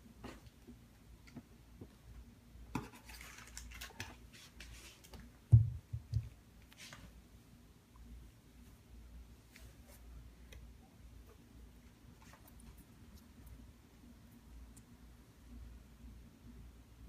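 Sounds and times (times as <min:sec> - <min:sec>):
packaging rustling and scraping: 0:02.8 - 0:05.1
dull thumps: 0:05.5 - 0:06.3.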